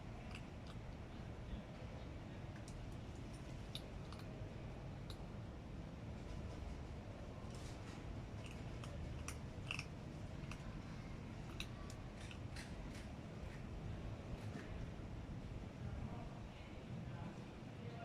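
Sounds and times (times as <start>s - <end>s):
cat crunching food: 0.0s - 1.1s, 2.4s - 5.5s, 7.4s - 13.8s.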